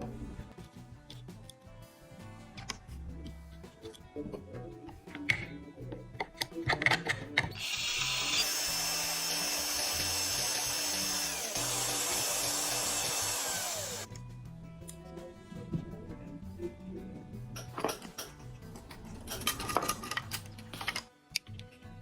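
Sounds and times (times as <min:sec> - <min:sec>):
background music: 0:00.0 - 0:22.0
handheld power tool running: 0:07.6 - 0:14.1.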